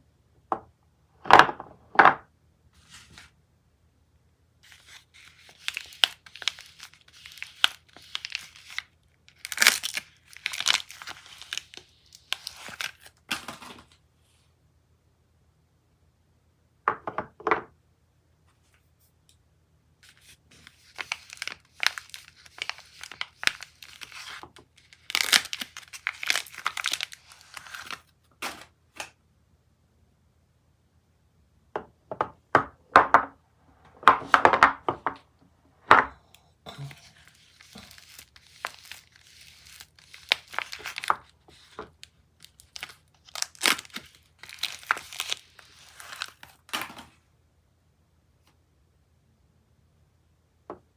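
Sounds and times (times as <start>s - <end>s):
wrappers tearing and crinkling: 4.7s - 13.9s, 20.1s - 28.7s, 36.8s - 47.1s.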